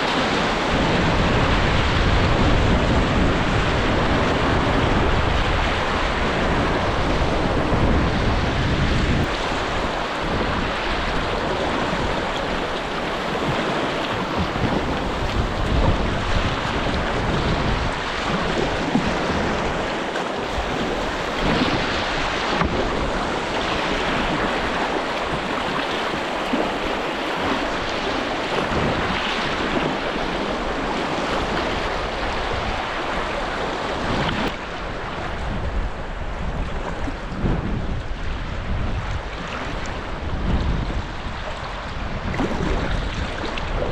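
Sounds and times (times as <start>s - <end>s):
wind buffeting microphone: 0.0s - 43.9s
river water rushing over rocks: 8.7s - 35.1s.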